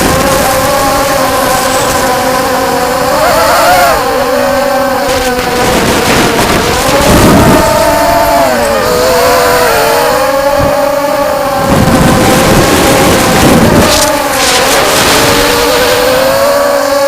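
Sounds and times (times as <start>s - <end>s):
quadcopter motors whining: 0.0s - 17.0s.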